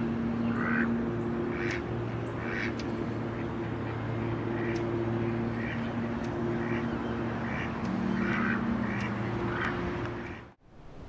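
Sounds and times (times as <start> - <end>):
steady low hum: 0.0 - 11.0
duck quacking: 2.4 - 2.8, 6.6 - 10.4.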